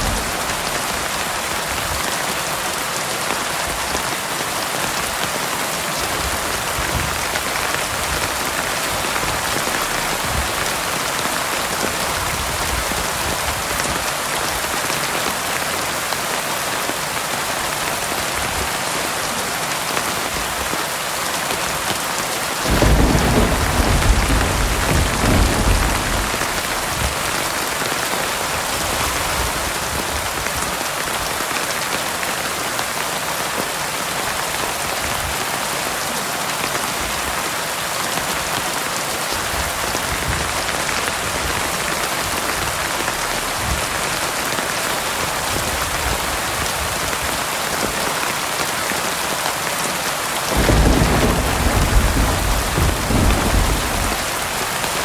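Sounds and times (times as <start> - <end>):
low rumble of thunder: 0.0 - 2.0, 6.8 - 13.7, 22.6 - 27.6, 50.5 - 55.0
heavy rain falling: 0.0 - 55.0.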